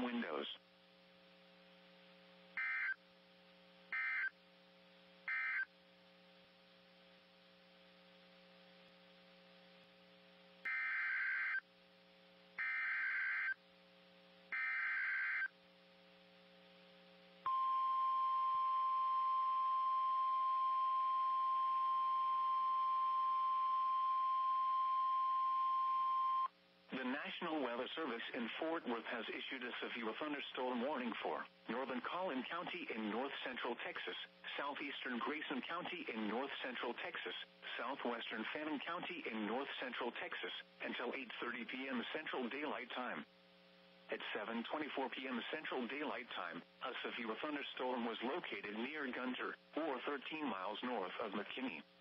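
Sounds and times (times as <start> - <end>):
faint low hum: 0.0 - 52.0
steady warning alarm tone: 2.6 - 3.0, 3.9 - 4.3, 5.3 - 5.7, 10.7 - 11.6, 12.6 - 13.6, 14.5 - 15.5, 17.5 - 26.5.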